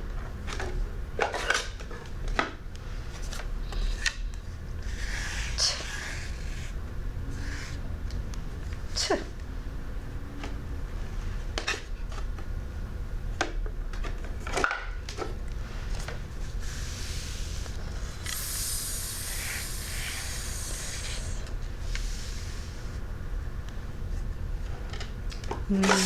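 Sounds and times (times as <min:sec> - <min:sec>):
fingertip rubbing sandpaper: 0:18.2 - 0:21.4.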